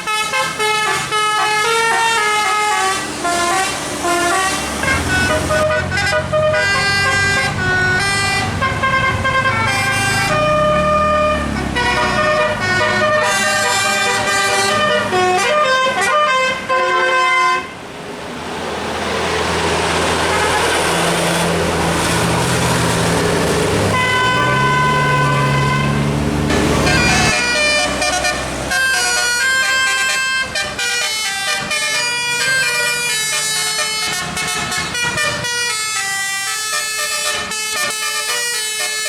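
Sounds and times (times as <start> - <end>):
bus musical air horn: 0.0 - 17.9, 19.9 - 39.0
engine running: 1.8 - 15.7, 17.8 - 35.6
loud rushing noise: 17.8 - 29.1.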